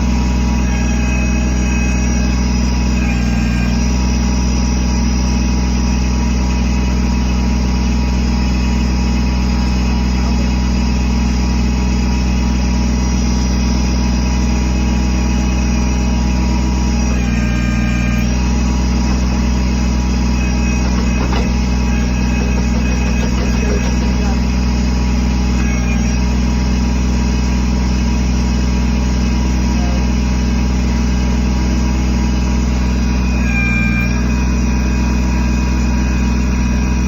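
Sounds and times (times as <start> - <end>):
diesel engine running: 0.0 - 37.0.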